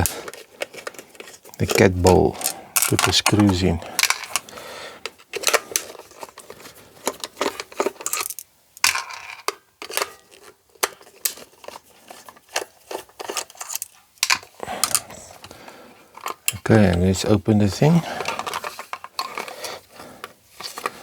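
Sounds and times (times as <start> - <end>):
plastic case clicks and rattles: 0.0 - 4.5.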